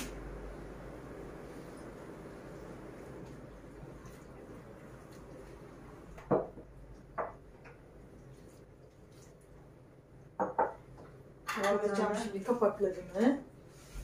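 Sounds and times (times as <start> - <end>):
low background noise: 0.0 - 14.0
kitchenware knocking: 10.4 - 10.8.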